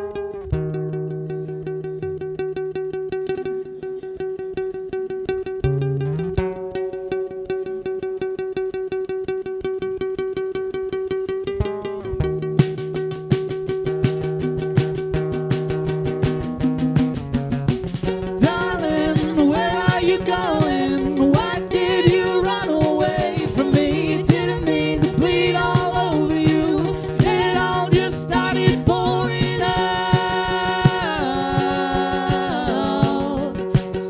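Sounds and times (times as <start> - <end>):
drum hits: 12.3 - 34.0.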